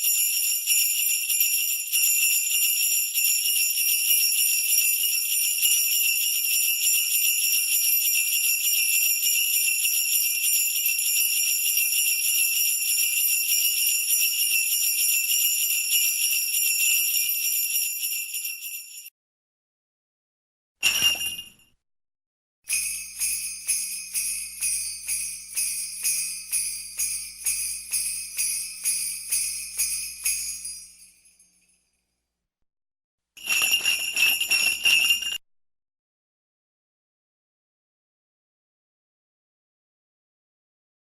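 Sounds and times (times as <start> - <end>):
sleigh bells jingling: 0.0 - 19.1, 20.8 - 21.7, 22.7 - 32.1, 33.4 - 35.4.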